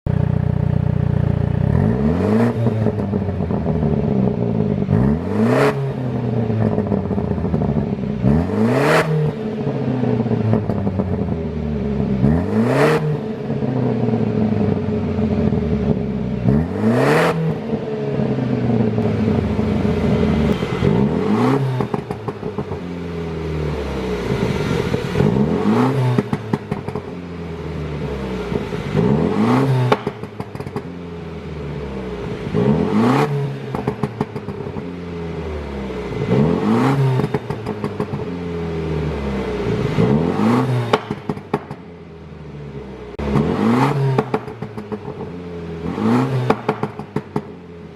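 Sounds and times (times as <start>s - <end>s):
car engine revving: 0.2s - 42.1s, 42.7s - 47.9s
exhaust pops and crackles: 26.2s - 27.2s, 29.8s - 30.9s, 33.7s - 34.9s, 37.2s - 38.3s, 40.8s - 41.9s, 43.3s - 45.3s, 46.4s - 47.6s.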